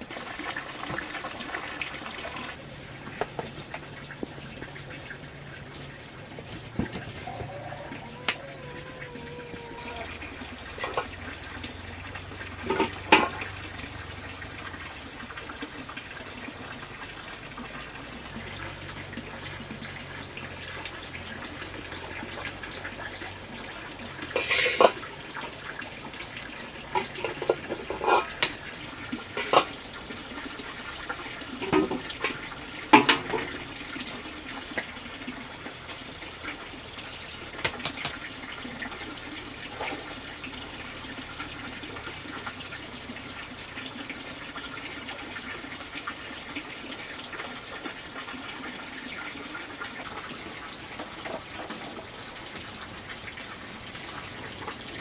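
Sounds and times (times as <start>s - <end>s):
water running: 0.0s - 55.0s
knocks and clatters: 6.3s - 7.6s.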